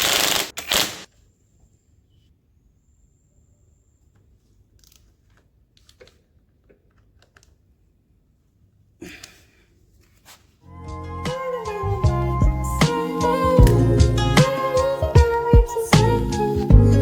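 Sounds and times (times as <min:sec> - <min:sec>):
music: 0:10.7 - 0:17.0.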